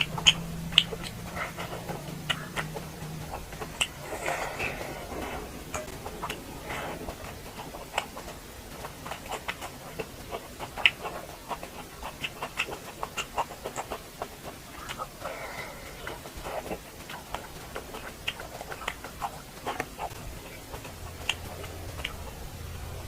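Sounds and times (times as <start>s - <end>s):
breathy sounds: 0.0s - 9.1s, 14.6s - 17.8s
wet mouth clicks: 0.0s - 23.0s.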